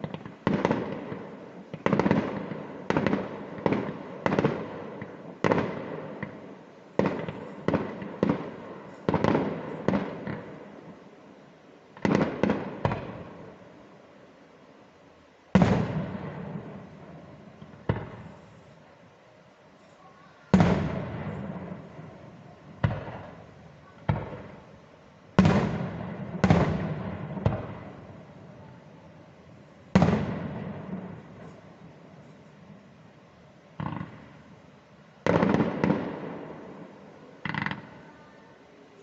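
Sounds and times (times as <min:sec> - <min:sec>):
fireworks bursting with echoing rumble: 0:00.0 - 0:39.0.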